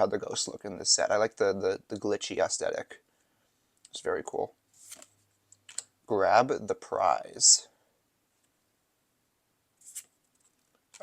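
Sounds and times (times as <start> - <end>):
trading card sliding: 4.8 - 5.2, 9.8 - 10.2.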